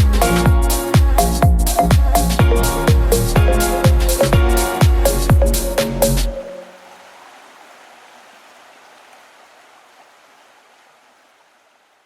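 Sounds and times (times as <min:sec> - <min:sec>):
electronic background music: 0:00.0 - 0:06.6.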